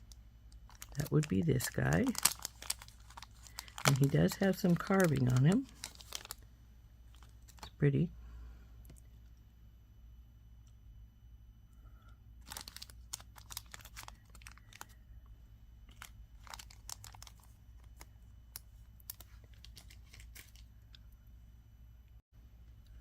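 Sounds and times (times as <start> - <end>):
bead packets crinkling: 0.5 - 6.5, 7.1 - 7.8, 12.4 - 15.0, 15.9 - 18.1, 19.0 - 21.0.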